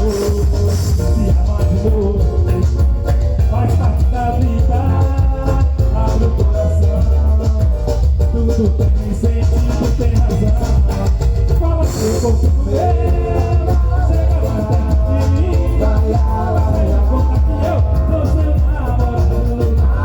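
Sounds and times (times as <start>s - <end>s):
samba music with singing: 0.0s - 20.0s.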